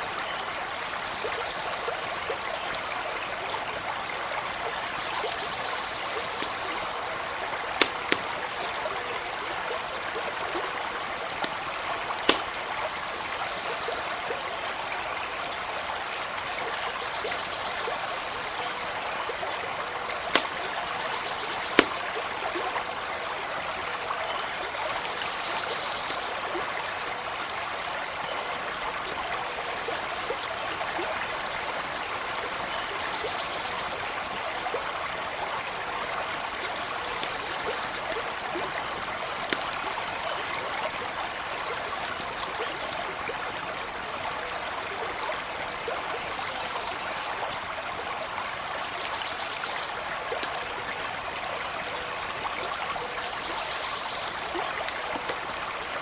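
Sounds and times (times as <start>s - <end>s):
stream running over stones: 0.0s - 56.0s
campfire crackling pops: 4.9s - 14.6s, 18.4s - 25.3s, 35.8s - 45.7s, 54.6s - 56.0s.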